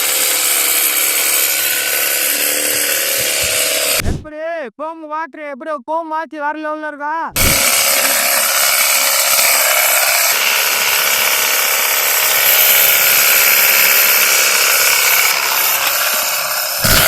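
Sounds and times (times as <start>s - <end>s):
pressure washer motor whining: 0.0s - 4.1s, 7.4s - 17.0s
foam spraying: 7.4s - 17.0s.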